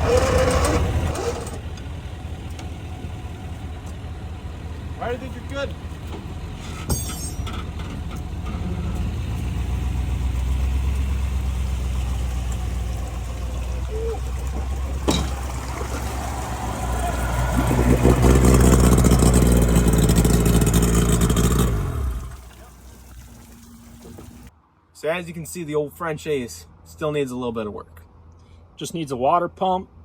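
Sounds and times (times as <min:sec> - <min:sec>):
vehicle engine accelerating: 0:00.0 - 0:06.9, 0:07.5 - 0:22.4.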